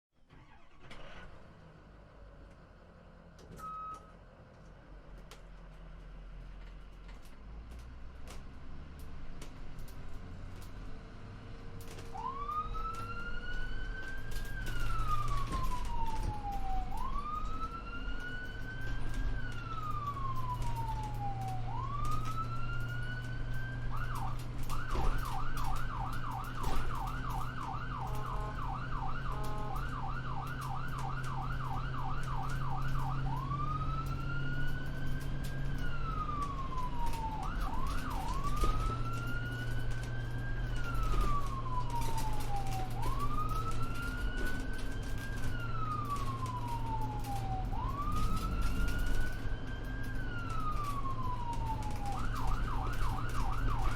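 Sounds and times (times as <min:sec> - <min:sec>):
low vehicle hum: 0:00.2 - 0:53.9
ambulance siren wailing and yelping: 0:00.3 - 0:01.3, 0:11.9 - 0:53.9.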